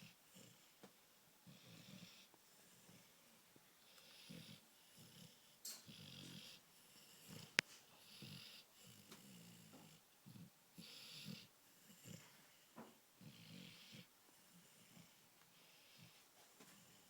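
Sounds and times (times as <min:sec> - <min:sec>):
dog snoring: 0:00.0 - 0:00.8, 0:01.4 - 0:17.0.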